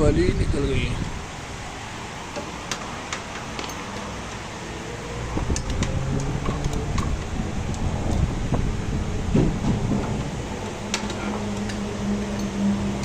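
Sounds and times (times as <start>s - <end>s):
metal tools clicking: 10.9s - 12.6s.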